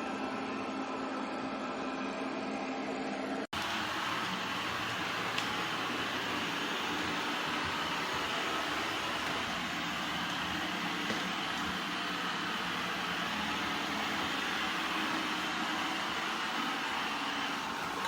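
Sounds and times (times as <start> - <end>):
robot vacuum whirring: 3.6 - 18.0.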